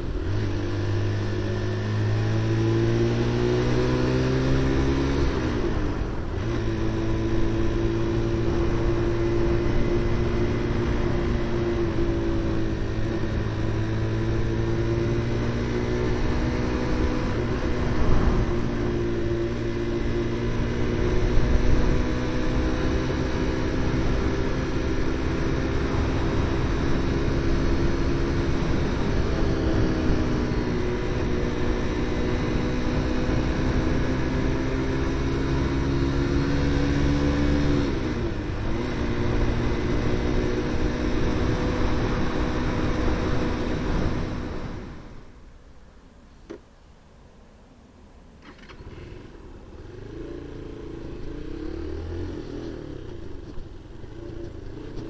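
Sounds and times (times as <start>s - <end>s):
motorcycle engine running: 0.0s - 45.3s.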